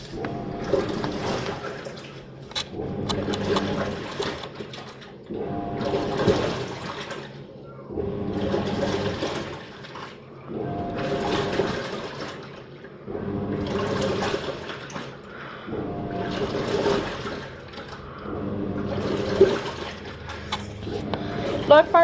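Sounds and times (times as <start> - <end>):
washing machine churning water: 0.0 - 22.0.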